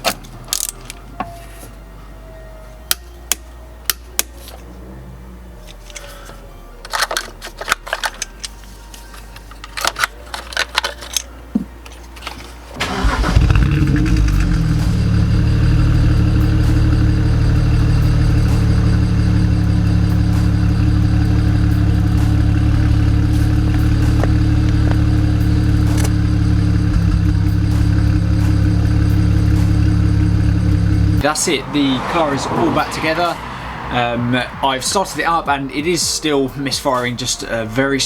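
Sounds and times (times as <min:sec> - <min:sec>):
car engine starting and idling: 0:12.7 - 0:37.1.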